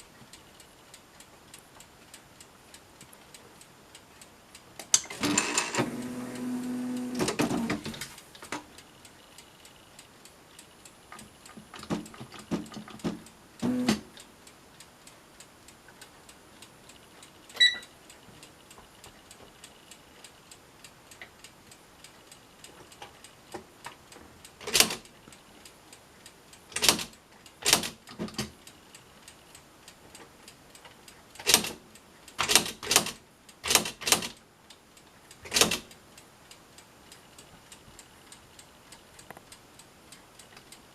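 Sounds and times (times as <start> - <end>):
typewriter mechanical hum: 4.9 - 8.6, 11.2 - 14.2, 24.6 - 25.2, 26.7 - 28.6, 31.4 - 34.4, 35.4 - 36.0
short electronic beep: 17.6 - 17.9
typewriter sharp strikes: 24.6 - 25.0, 26.8 - 28.4, 31.4 - 31.8, 32.4 - 34.4, 35.5 - 35.9
light typewriter clicks: 24.6 - 25.2, 26.7 - 28.6, 31.4 - 34.4, 35.4 - 36.0.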